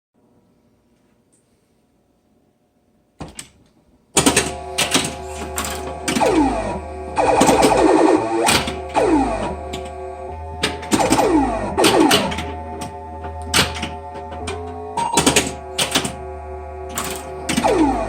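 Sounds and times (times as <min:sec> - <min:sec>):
electronic game sounds: 0:04.2 - 0:18.0
falling electronic sweeps: 0:04.6 - 0:18.0
mechanical clicks: 0:10.6 - 0:16.2.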